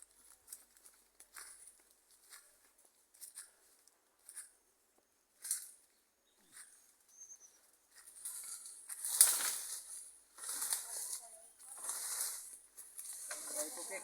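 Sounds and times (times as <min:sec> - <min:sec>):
dry leaves and brush rustling: 0:00.0 - 0:04.6, 0:05.3 - 0:07.0, 0:07.6 - 0:14.0
faint high chirp: 0:05.8 - 0:07.9.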